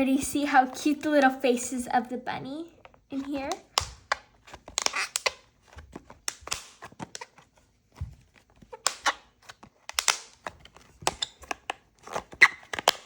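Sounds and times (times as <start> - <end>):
plastic lid clicks and crackles: 2.8 - 7.4, 8.0 - 13.0.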